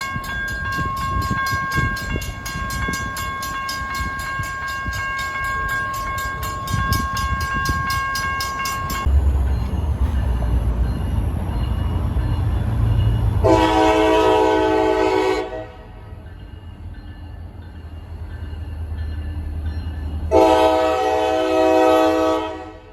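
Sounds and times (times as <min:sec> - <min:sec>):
railroad crossing bell ringing: 0:00.0 - 0:22.9
locomotive engine rumble: 0:00.1 - 0:22.4
train horn: 0:13.4 - 0:16.0, 0:20.3 - 0:22.9.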